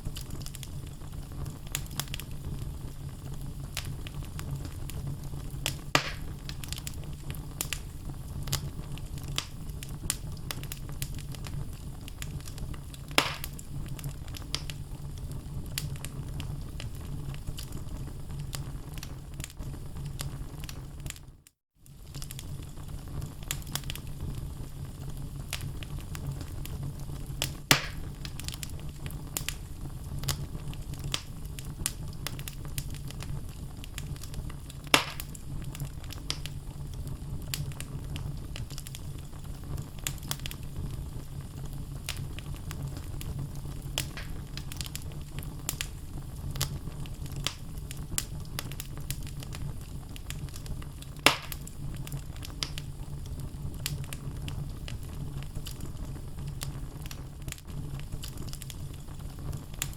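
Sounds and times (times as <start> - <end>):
loud fire pops: 0.0 - 21.3, 21.9 - 59.9
low rumble of flames: 0.0 - 59.9
logs crackling: 3.2 - 14.8, 27.4 - 36.5, 41.6 - 52.9.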